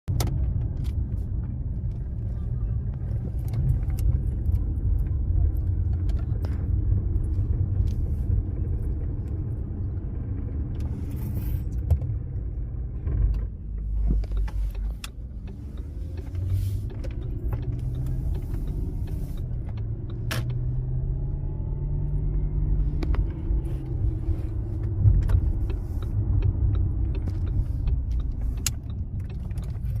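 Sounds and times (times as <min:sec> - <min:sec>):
car engine rumble: 0:00.1 - 0:30.0
sharp clicks and knocks: 0:13.0 - 0:20.9, 0:24.5 - 0:30.0.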